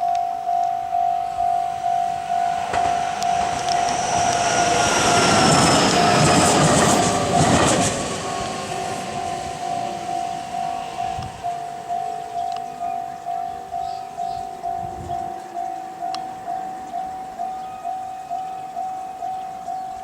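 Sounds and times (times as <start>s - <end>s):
level crossing bell ringing: 0.0s - 6.2s, 7.2s - 20.0s
rush of train wheels on rails: 1.3s - 12.1s.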